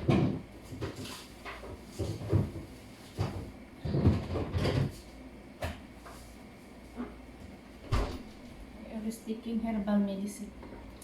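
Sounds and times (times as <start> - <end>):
kitchen things knocking and clunking: 0.0 - 5.0.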